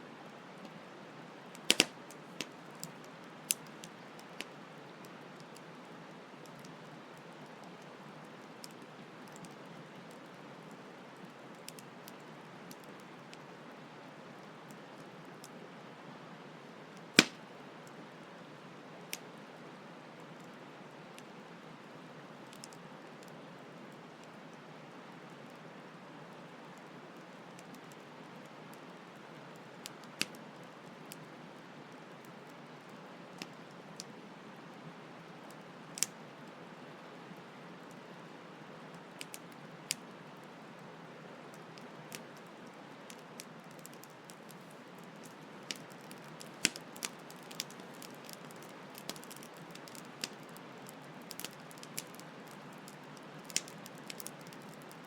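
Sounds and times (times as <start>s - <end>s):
campfire crackling: 0.2s - 55.0s
fire popping: 1.5s - 4.6s, 17.0s - 17.5s, 41.5s - 55.0s.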